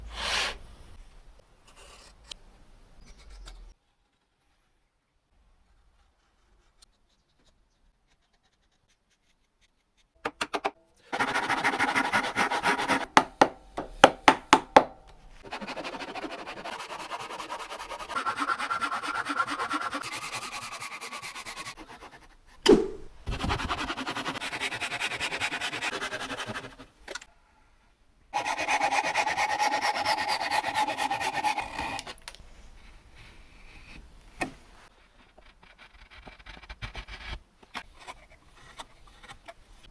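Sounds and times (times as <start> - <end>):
hand saw cutting wood: 11.1 - 14.6, 15.4 - 22.7, 23.3 - 26.9, 28.4 - 32.2
sharp knock: 22.6 - 23.4.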